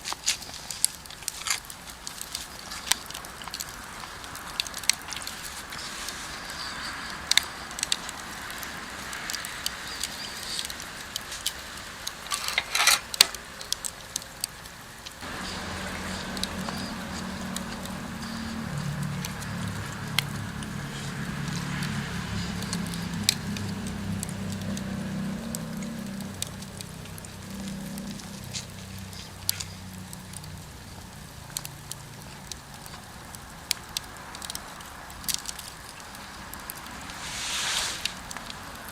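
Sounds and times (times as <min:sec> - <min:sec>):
wood fire crackling and popping: 0:00.0 - 0:38.9.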